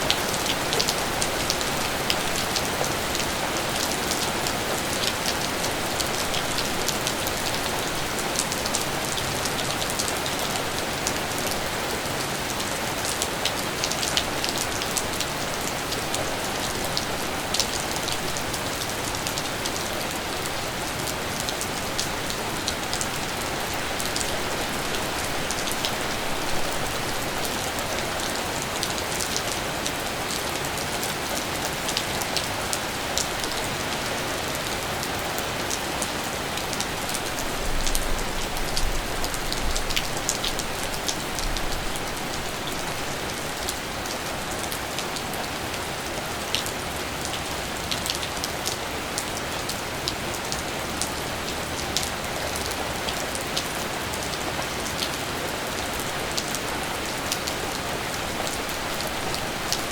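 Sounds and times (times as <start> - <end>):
rain falling: 0.0 - 59.9.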